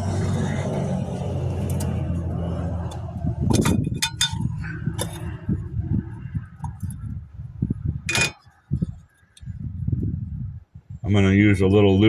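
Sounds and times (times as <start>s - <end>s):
low rumble: 0.0s - 8.9s
metal parts clinking: 8.1s - 8.4s.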